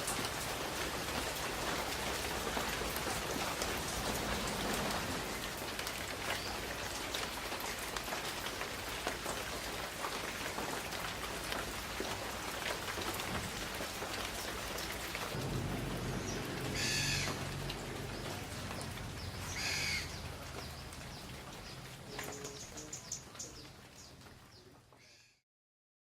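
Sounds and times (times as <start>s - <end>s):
raindrops striking close by: 0.0s - 25.4s
steady rain falling: 0.0s - 25.4s
distant thunder rumble: 0.6s - 6.7s, 15.2s - 21.9s
harsh bird call: 16.2s - 17.5s, 19.5s - 20.3s.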